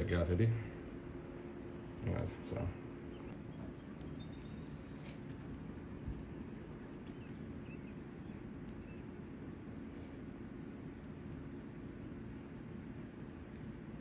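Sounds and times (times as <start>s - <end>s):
steady low hum: 0.0s - 14.0s
faint bird chirps: 3.0s - 5.2s, 7.0s - 10.2s.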